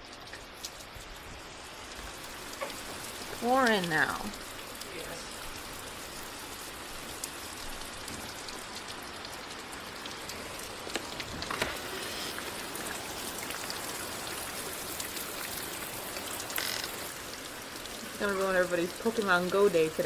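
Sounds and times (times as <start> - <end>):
steady rain falling: 0.0 - 20.0
water drips: 0.0 - 20.0.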